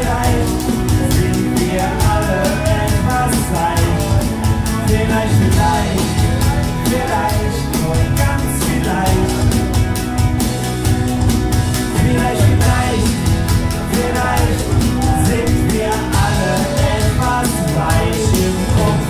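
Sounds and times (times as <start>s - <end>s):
live band playing folk-pop: 0.0s - 19.0s
steady drum beat: 0.0s - 19.0s.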